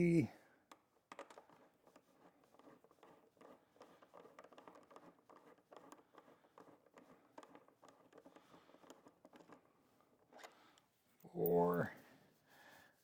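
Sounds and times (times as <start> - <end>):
hand tool ticking and scraping: 0.6 - 11.9.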